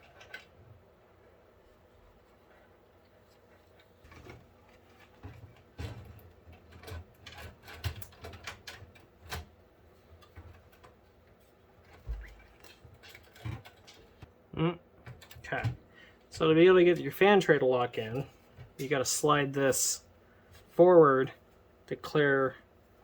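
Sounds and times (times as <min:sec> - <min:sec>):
fan tray clicking and rubbing: 0:02.3 - 0:14.3.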